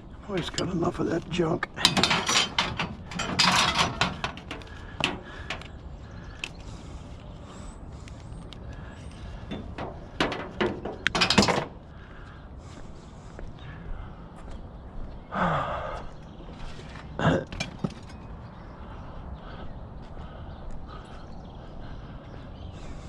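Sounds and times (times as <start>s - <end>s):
junk clattering and scraping: 0.4s - 6.6s, 9.0s - 12.1s, 16.6s - 18.5s.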